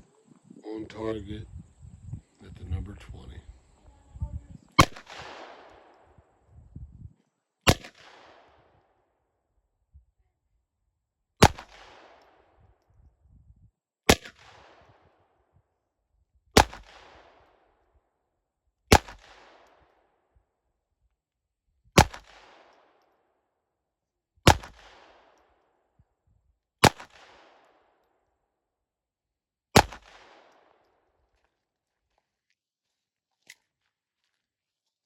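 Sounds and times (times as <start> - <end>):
pistol shots: 4.8 - 6.1, 7.7 - 8.8, 11.4 - 12.5, 14.1 - 15.2, 16.6 - 17.6, 18.9 - 19.9, 22.0 - 23.0, 24.5 - 25.5, 26.8 - 27.9, 29.8 - 30.9.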